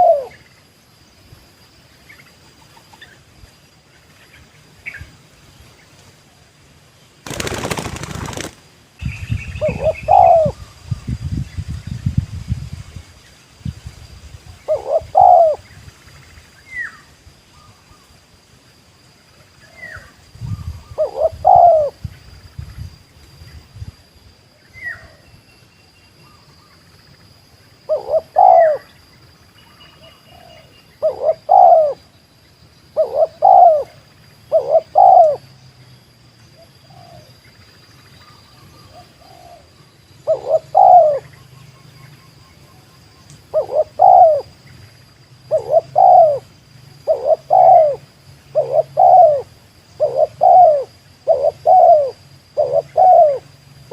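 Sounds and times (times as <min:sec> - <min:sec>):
dove cooing: 0:00.0 - 0:00.4, 0:09.6 - 0:10.6, 0:14.7 - 0:15.6, 0:20.9 - 0:22.0, 0:27.9 - 0:28.9, 0:30.2 - 0:32.0, 0:33.0 - 0:35.4, 0:38.8 - 0:41.3, 0:43.5 - 0:44.5, 0:45.5 - 0:53.5
faint bird chirps: 0:24.5 - 0:53.9.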